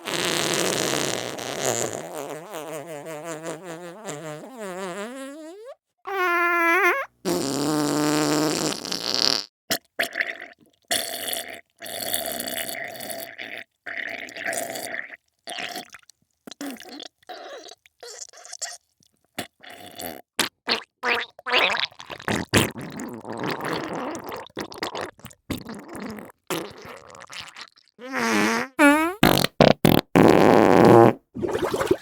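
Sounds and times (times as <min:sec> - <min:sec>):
long buzzing fart: 0:00.0 - 0:09.5, 0:28.0 - 0:31.3
wet sputtering farts: 0:00.0 - 0:10.3, 0:19.4 - 0:32.0.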